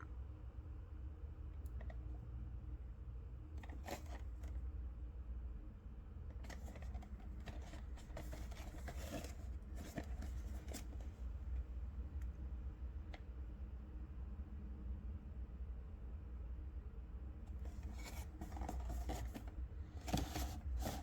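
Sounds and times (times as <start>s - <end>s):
packaging scraping and crinkling: 3.6s - 4.3s, 6.4s - 11.0s, 17.6s - 21.0s.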